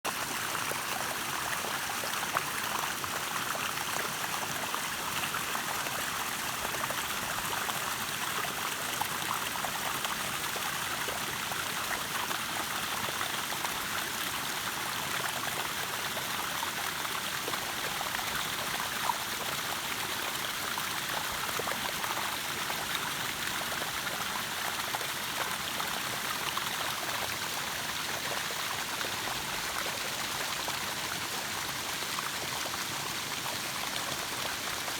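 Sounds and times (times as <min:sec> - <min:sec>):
stream rushing over rocks: 0:00.1 - 0:34.9.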